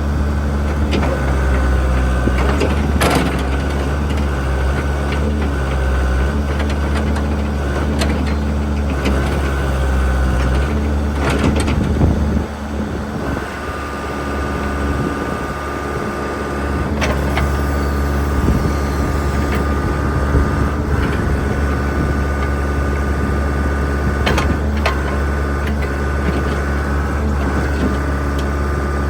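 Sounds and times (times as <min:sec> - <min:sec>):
diesel engine running with whine: 0:00.0 - 0:29.0
metal clanks and knocks: 0:24.0 - 0:28.6.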